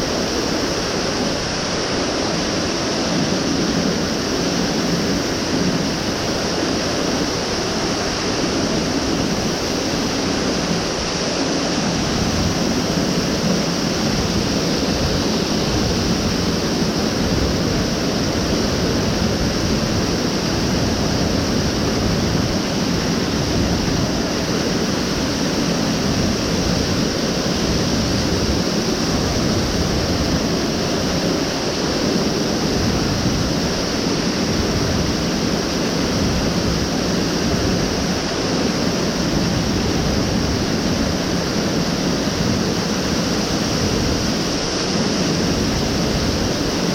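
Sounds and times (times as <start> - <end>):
stream water rushing: 0.0 - 46.9.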